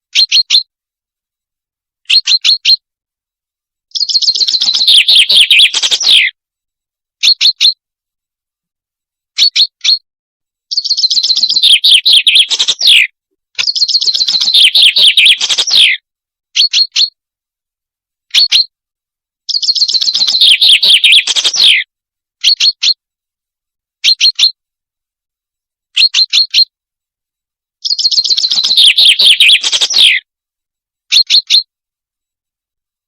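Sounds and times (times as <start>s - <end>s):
songbird chirps: 0.1s - 0.7s, 2.0s - 2.8s, 3.9s - 6.4s, 7.2s - 7.8s, 9.4s - 10.0s, 10.7s - 16.0s, 16.6s - 17.2s, 18.3s - 18.7s, 19.5s - 23.0s, 24.0s - 24.6s, 25.9s - 26.7s, 27.8s - 30.2s, 31.1s - 31.7s
bird rattling trills: 4.0s - 6.2s, 10.8s - 13.0s, 13.6s - 15.9s, 19.5s - 21.8s, 27.9s - 30.1s.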